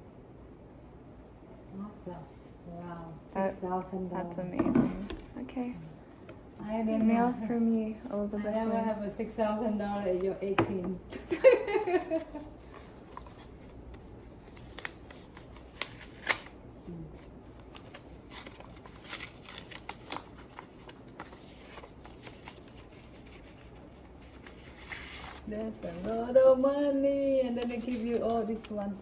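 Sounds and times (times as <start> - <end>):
paper rustling and crinkling: 12.1 - 29.0
paper snaps: 15.7 - 16.6.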